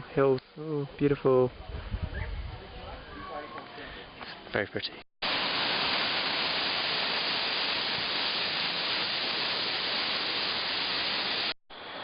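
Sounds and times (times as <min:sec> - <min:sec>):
steady hiss: 0:05.2 - 0:12.0.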